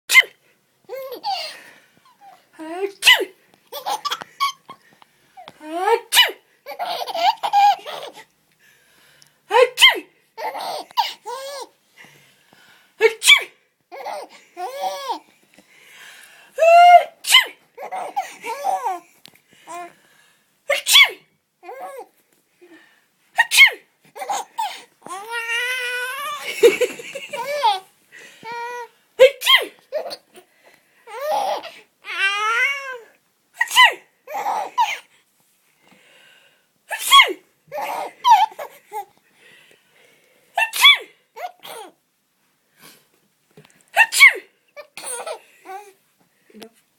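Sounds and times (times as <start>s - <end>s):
person fake sneezing: 0.1s - 0.4s, 2.9s - 3.4s, 5.8s - 6.4s, 9.5s - 10.1s, 13.0s - 13.6s, 16.6s - 17.6s, 20.7s - 21.3s, 23.4s - 23.9s, 29.2s - 30.2s, 33.6s - 35.1s, 36.9s - 38.0s, 40.6s - 41.9s, 44.0s - 45.4s
baby giggling: 0.9s - 4.8s, 5.9s - 8.3s, 9.7s - 11.8s, 13.2s - 15.2s, 16.7s - 19.0s, 24.2s - 27.9s, 31.1s - 32.9s, 33.7s - 35.1s, 37.7s - 39.1s.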